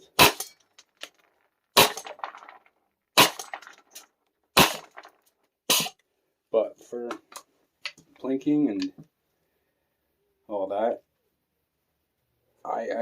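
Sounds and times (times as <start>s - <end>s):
airsoft shotgun shots: 0.2s - 0.5s, 1.8s - 2.2s, 3.2s - 3.6s, 4.6s - 5.0s, 5.7s - 5.9s
pellets clicking on target: 1.8s - 6.0s.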